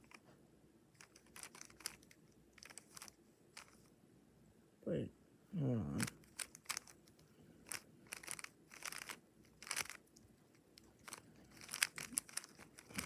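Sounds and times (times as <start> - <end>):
puzzle cube layers clicking: 1.0 - 3.8, 6.0 - 10.2, 10.8 - 13.0.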